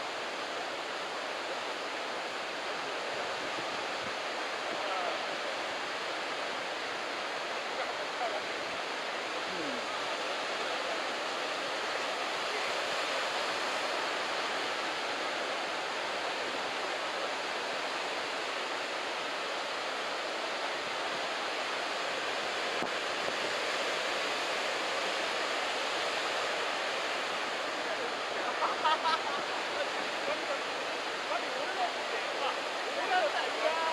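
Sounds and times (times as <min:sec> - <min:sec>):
surf breaking on beach: 0:21.5 - 0:33.9.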